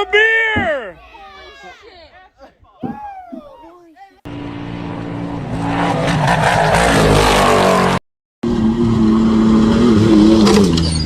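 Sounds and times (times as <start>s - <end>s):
engine revving: 4.3s - 11.0s.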